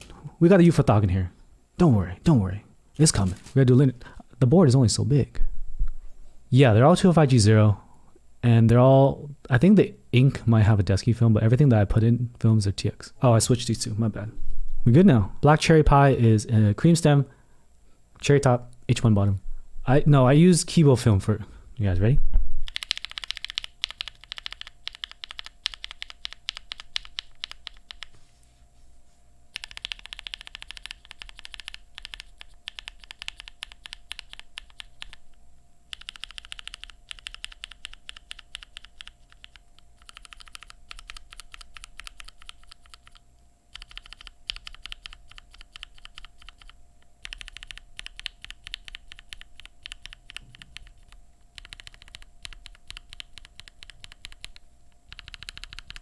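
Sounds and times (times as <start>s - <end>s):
mechanical keyboard keystrokes: 22.7s - 28.1s, 29.6s - 35.2s, 35.9s - 56.0s.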